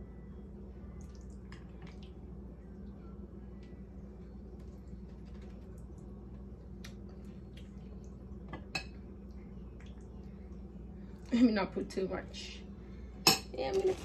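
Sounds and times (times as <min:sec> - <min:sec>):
low hum: 0:00.0 - 0:14.0
soft squishes of mash: 0:00.7 - 0:11.3.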